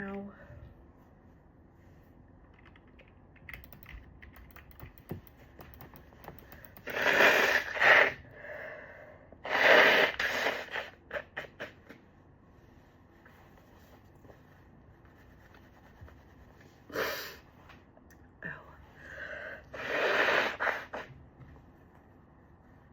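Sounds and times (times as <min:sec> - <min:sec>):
person sniffing: 0:19.8 - 0:21.1.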